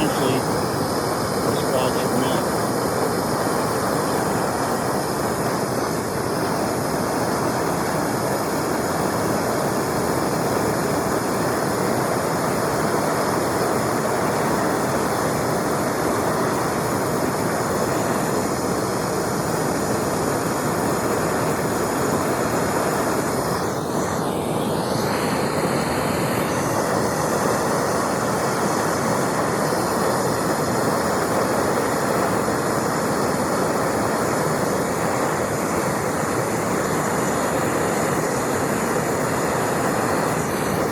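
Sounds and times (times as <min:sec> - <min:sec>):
gas torch flame hissing: 0:00.0 - 0:40.9.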